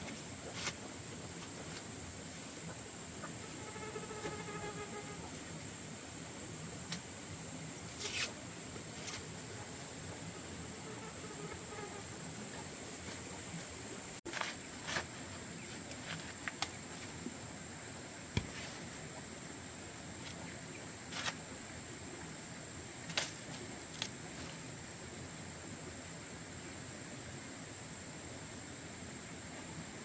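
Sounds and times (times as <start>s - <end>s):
background hiss: 0.0s - 30.0s.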